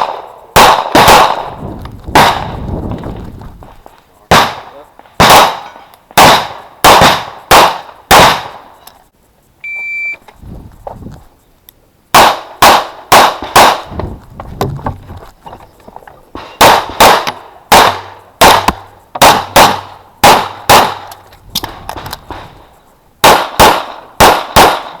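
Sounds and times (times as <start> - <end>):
pistol shots: 0.0 - 2.6, 4.3 - 8.6, 12.1 - 13.9, 16.4 - 22.4, 23.2 - 25.0
shot timer beep: 9.6 - 10.2.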